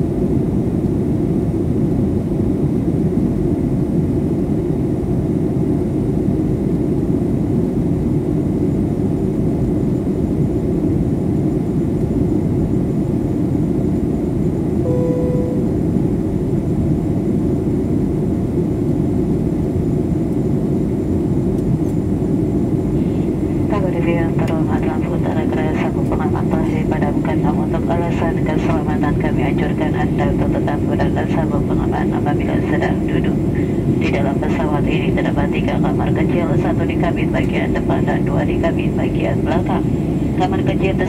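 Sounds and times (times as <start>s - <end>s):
airliner cabin engine rumble: 0.0s - 41.0s
single chime tone: 14.8s - 15.9s.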